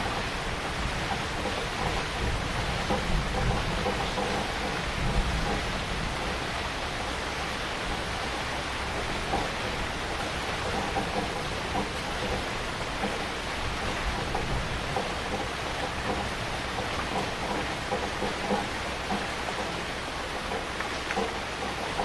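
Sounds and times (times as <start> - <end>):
heavy rain falling: 0.0 - 22.0.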